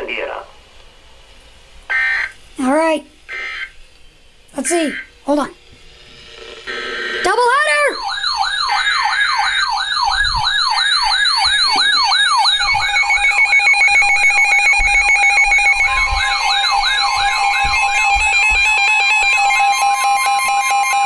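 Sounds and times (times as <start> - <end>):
electronic siren tone sweeping: 1.9 - 2.4, 3.3 - 3.8, 4.6 - 5.2, 5.8 - 21.0
steady alert tone: 4.6 - 5.6, 6.7 - 20.4.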